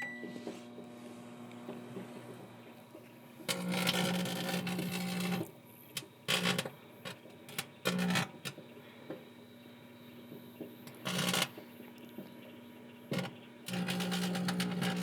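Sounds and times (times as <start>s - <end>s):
foil arcing in microwave: 3.4s - 8.6s, 10.8s - 11.7s, 13.1s - 15.0s.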